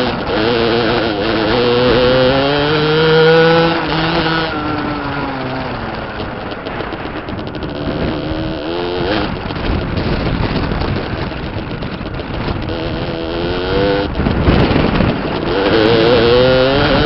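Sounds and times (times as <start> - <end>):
two-stroke engine revving: 0.0 - 17.0.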